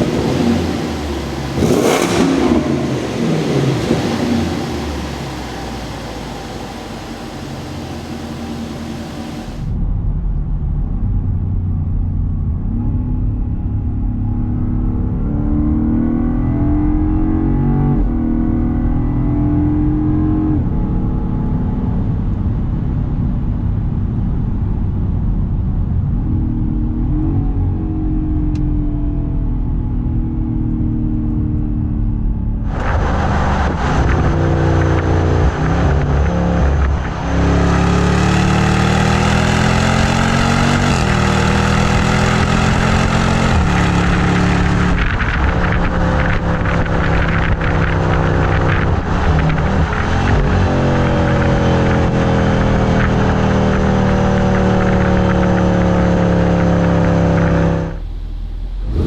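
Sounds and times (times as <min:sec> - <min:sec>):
car engine revving: 0:00.0 - 0:09.8, 0:26.1 - 0:59.0.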